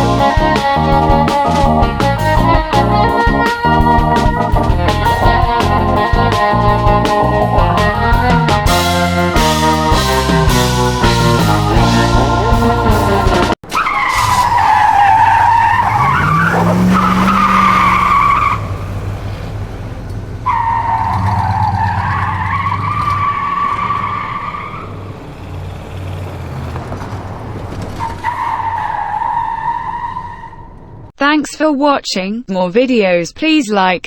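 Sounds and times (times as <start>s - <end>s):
background music: 0.0s - 13.6s
car tyres squealing and skidding: 13.6s - 31.1s
low engine hum: 14.3s - 28.4s.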